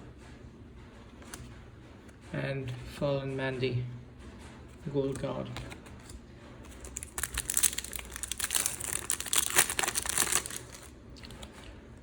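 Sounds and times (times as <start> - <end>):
plastic wrapper crinkling: 6.7 - 11.4.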